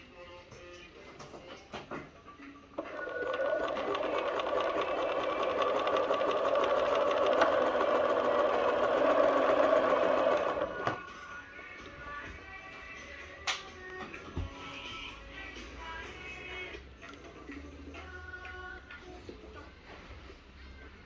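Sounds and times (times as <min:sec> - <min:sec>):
sewing machine running: 0:02.8 - 0:11.0.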